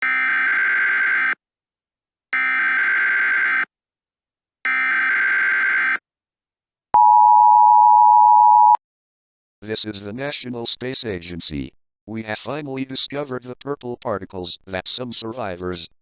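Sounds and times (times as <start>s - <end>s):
two-tone attention signal: 7.0s - 8.8s.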